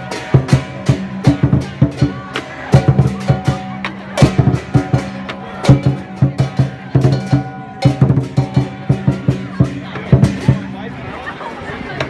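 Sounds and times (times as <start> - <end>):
cymbals crashing: 0.0 - 10.9
large drum beaten: 0.0 - 11.1.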